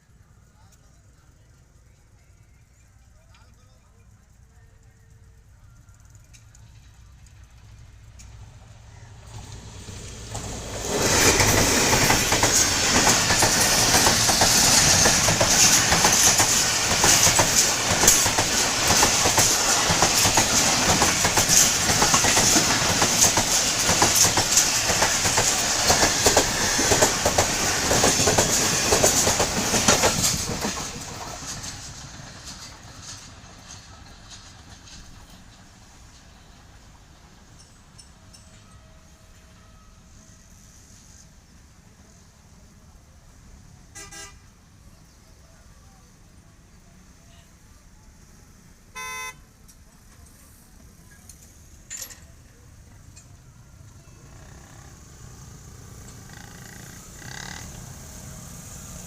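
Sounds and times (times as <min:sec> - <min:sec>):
train wheels clattering over rails: 0:06.2 - 0:38.9, 0:49.8 - 0:59.0.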